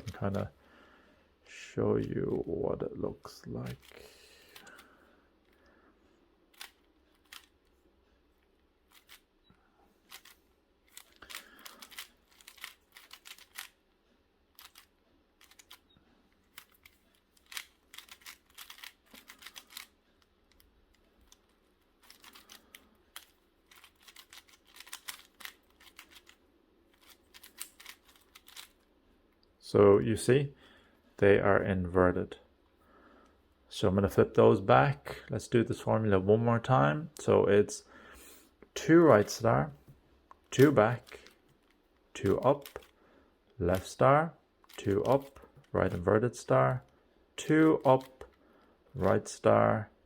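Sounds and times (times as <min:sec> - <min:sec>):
puzzle cube plastic clicks: 0:06.5 - 0:07.7, 0:10.1 - 0:13.8, 0:14.5 - 0:28.9, 0:40.3 - 0:43.0, 0:44.6 - 0:46.1.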